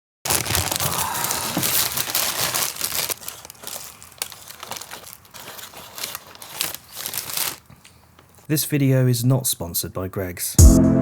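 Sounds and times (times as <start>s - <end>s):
packaging crinkling by hand: 0.2s - 8.5s.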